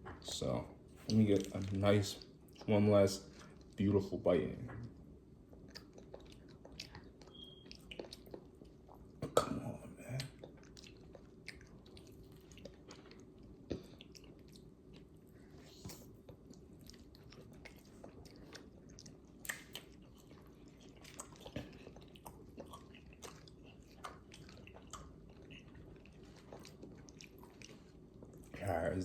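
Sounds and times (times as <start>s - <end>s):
person chewing: 1.0s - 3.8s, 5.4s - 9.4s, 10.0s - 28.6s.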